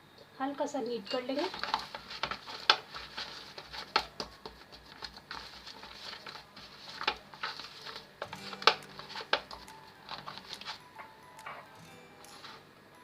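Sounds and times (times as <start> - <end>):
hands kneading dough: 1.3 - 11.6.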